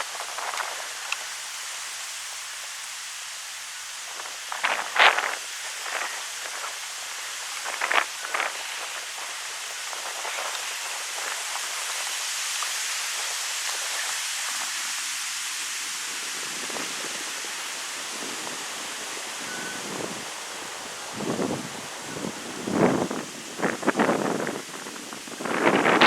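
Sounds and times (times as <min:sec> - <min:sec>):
wind rushing through trees: 0:00.0 - 0:26.0
wind gusts buffeting microphone: 0:04.1 - 0:12.2, 0:15.6 - 0:26.0.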